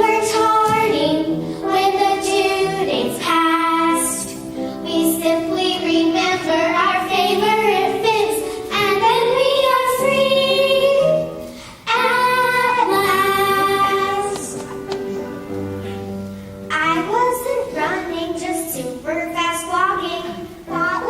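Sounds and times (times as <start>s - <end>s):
children singing: 0.0s - 11.2s, 11.9s - 15.2s
instrumental backing: 0.0s - 21.0s.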